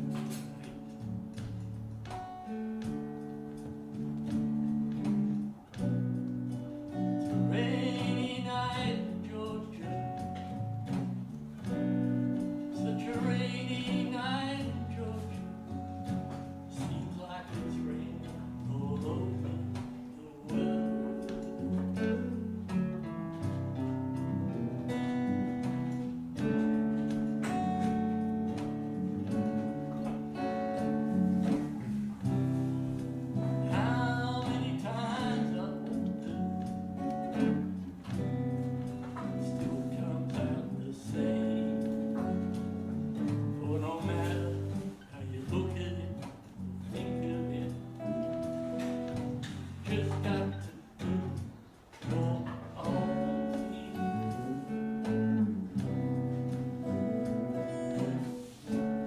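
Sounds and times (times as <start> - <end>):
backing track: 0.0 - 59.0
guitar playing: 0.0 - 59.0
person singing: 7.2 - 10.4, 12.6 - 22.8, 33.4 - 37.9, 39.1 - 48.4, 49.6 - 55.3, 56.8 - 59.0.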